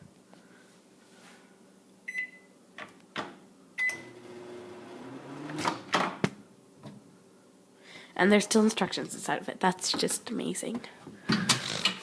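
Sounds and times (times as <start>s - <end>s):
microwave oven beeping: 2.1s - 2.6s, 3.8s - 5.9s.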